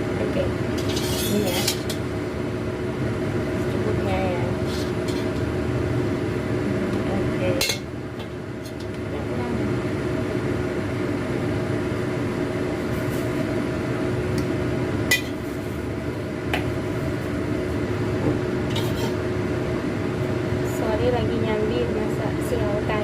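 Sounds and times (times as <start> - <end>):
steady hum and hiss: 0.0 - 23.0.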